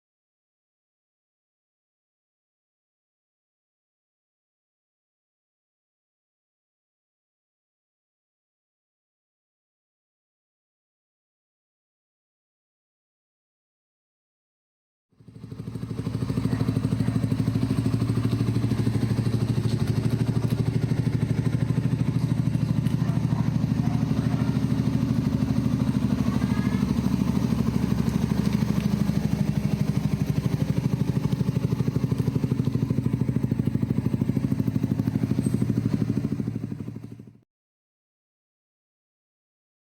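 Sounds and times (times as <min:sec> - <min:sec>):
motorcycle engine idling: 0:15.2 - 0:37.4.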